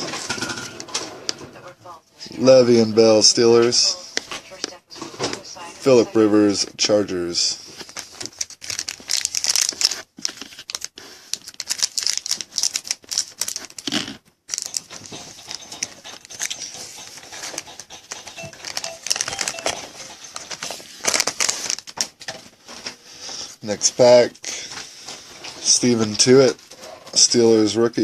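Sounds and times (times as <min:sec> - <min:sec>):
wrapper being torn and crinkled: 0:07.8 - 0:14.9, 0:20.9 - 0:22.1.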